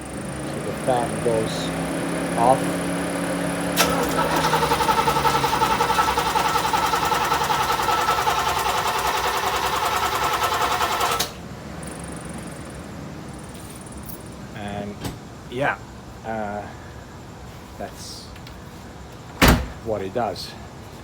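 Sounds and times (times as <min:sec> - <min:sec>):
electric fan humming: 0:00.0 - 0:16.4
engine cranking: 0:03.7 - 0:11.4.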